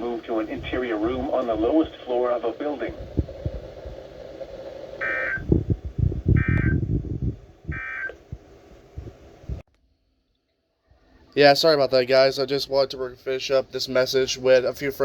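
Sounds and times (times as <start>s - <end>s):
buzzy radio data bursts: 0.0s - 9.6s
low rumbling noise: 0.0s - 9.6s.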